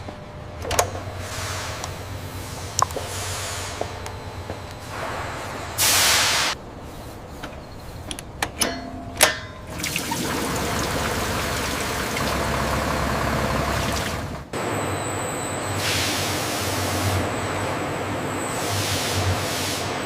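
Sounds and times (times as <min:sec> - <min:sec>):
air hissing: 0:04.8 - 0:06.6
rushing mechanical noise: 0:09.7 - 0:20.0.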